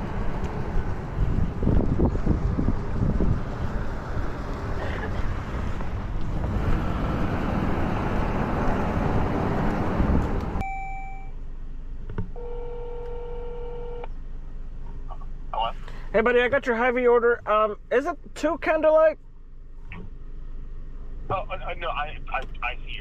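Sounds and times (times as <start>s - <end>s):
vehicle and road noise: 0.0s - 23.0s
short phone beep: 10.6s - 11.3s
telephone ringback tone: 12.4s - 14.0s.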